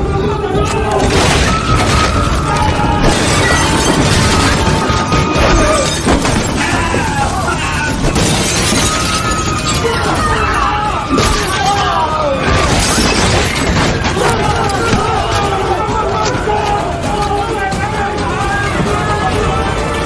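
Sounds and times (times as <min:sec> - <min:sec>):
glass shattering and crashing: 0:01.0 - 0:10.4, 0:11.1 - 0:17.2.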